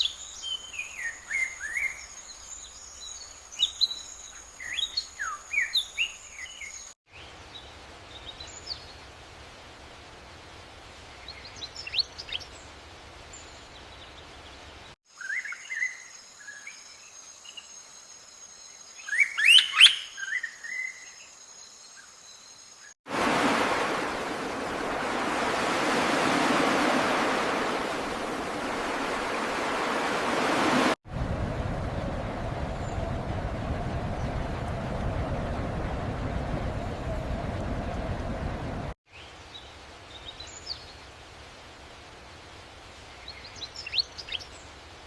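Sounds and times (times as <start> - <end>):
loud steady rushing noise: 23.1 - 39.0.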